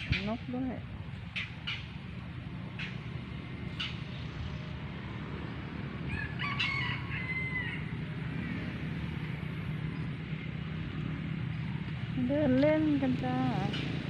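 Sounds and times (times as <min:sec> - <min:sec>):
rooster crowing: 0:06.0 - 0:08.1.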